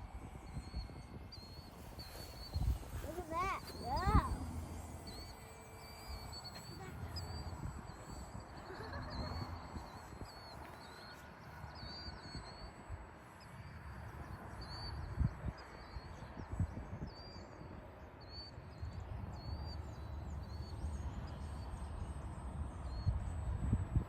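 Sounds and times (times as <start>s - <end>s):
wind buffeting microphone: 0.0s - 13.2s
small bird chirping: 0.4s - 22.1s.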